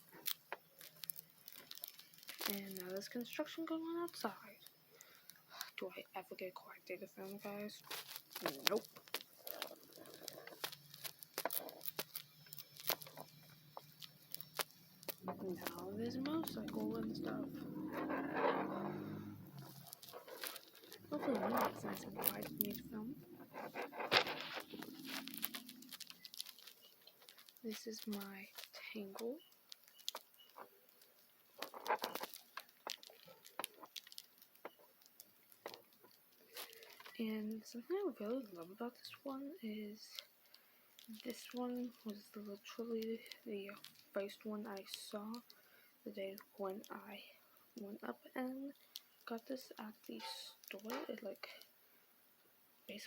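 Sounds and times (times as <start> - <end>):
faint low hum: 0.0 - 53.0.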